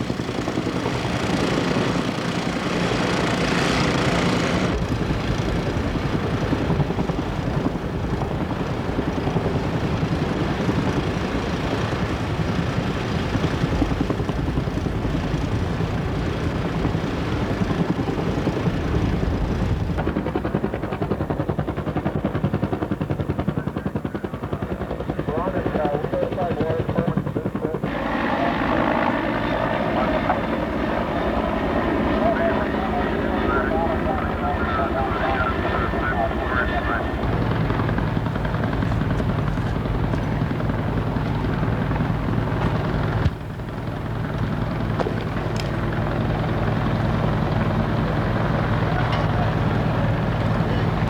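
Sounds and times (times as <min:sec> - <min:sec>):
helicopter rotor chopping: 0:00.0 - 0:51.0.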